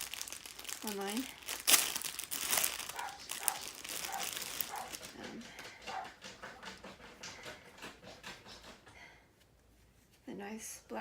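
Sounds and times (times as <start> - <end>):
plastic packaging crinkling: 0.0 - 6.0.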